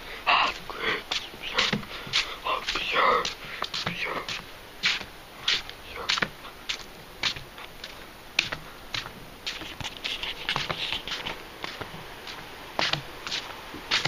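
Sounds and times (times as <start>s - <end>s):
footsteps crunching on trail: 0.0s - 14.0s
rustling: 0.4s - 14.0s.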